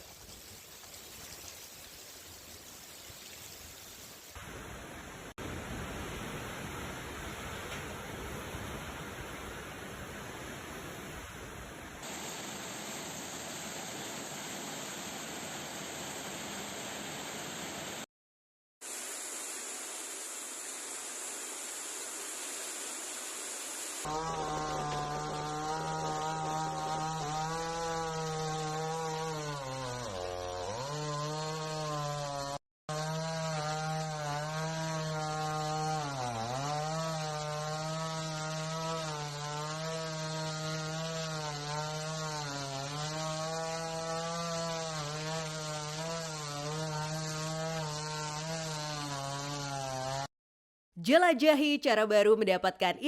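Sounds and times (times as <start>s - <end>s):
chainsaw cutting wood: 24.0s - 50.3s.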